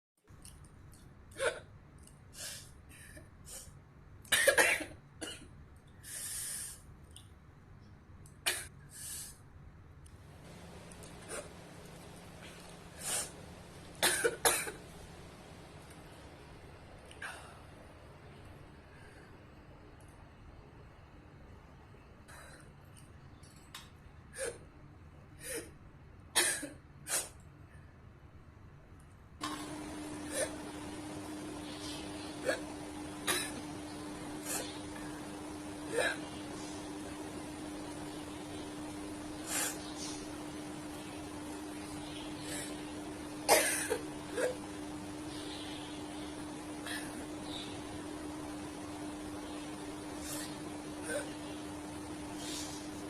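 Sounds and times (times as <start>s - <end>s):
girl coughing: 4.3s - 5.4s, 14.0s - 14.8s, 26.4s - 26.8s, 33.2s - 33.6s, 43.5s - 44.6s
breaths: 6.0s - 6.9s, 18.8s - 19.6s.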